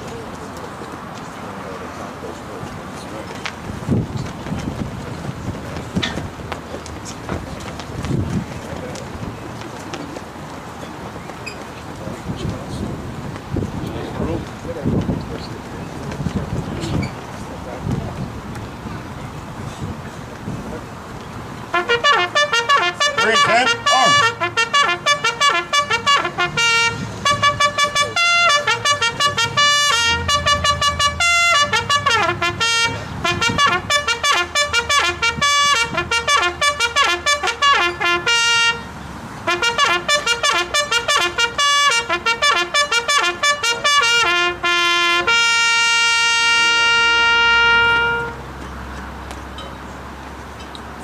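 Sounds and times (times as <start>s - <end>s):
solo trumpet call: 21.7s - 38.9s, 39.5s - 48.5s.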